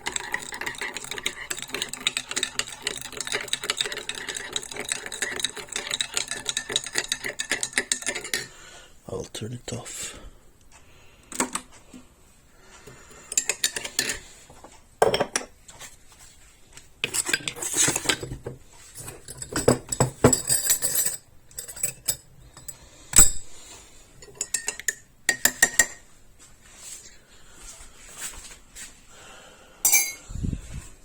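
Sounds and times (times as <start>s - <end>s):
cups and saucers clinking: 0.0s - 8.6s, 13.2s - 14.2s, 15.0s - 15.6s, 19.0s - 23.4s, 24.2s - 26.0s, 29.8s - 30.3s.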